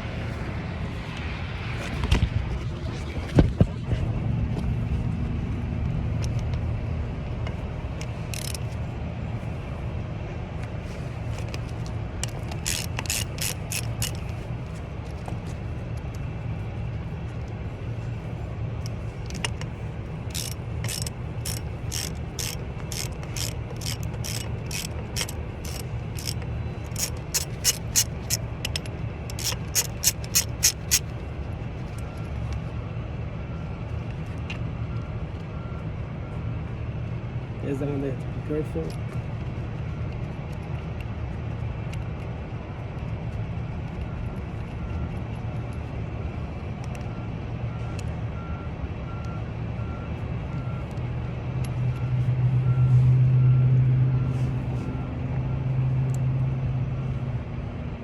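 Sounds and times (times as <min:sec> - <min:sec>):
steady low rumble: 0:00.0 - 0:44.7
ratchet wrench clicking: 0:08.0 - 0:08.8, 0:11.4 - 0:14.4, 0:18.8 - 0:19.7, 0:20.3 - 0:31.1.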